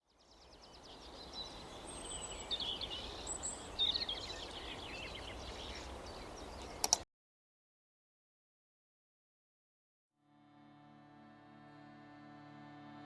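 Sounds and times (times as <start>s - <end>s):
small birds chirping: 0.0s - 7.0s.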